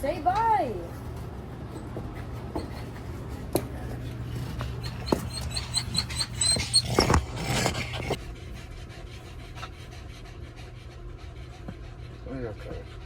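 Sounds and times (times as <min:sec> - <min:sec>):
dog whimpering squeaks: 0:04.3 - 0:08.2.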